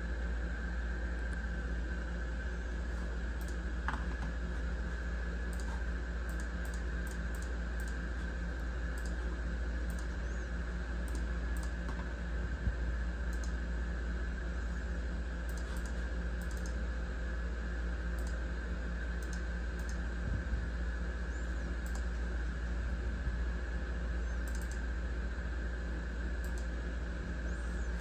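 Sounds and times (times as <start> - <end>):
steady low hum: 0.0 - 28.0
computer clicks: 3.4 - 3.6, 5.5 - 8.0, 9.0 - 9.2, 9.9 - 10.2, 11.1 - 11.9, 13.3 - 13.6, 15.5 - 16.8, 18.2 - 18.4, 19.2 - 20.0, 21.8 - 22.1, 24.4 - 24.8, 26.4 - 26.7.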